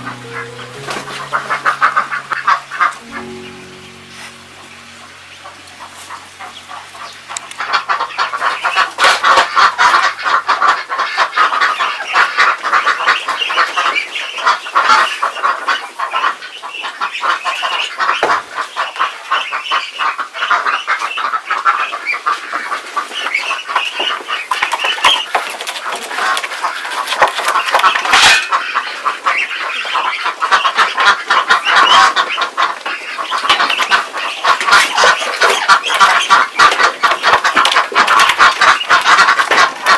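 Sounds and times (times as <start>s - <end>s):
ducks calling: 0.0s - 12.3s, 27.5s - 39.9s.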